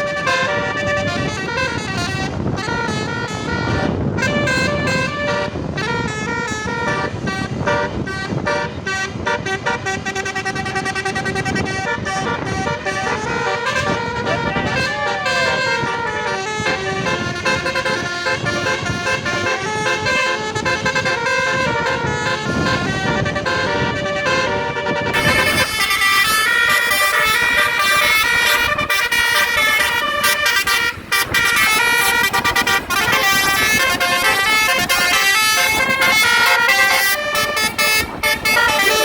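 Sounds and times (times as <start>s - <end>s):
engine rumble: 0.0s - 39.0s
multi-tone bus horn melody: 0.0s - 39.0s
traffic: 0.0s - 39.0s.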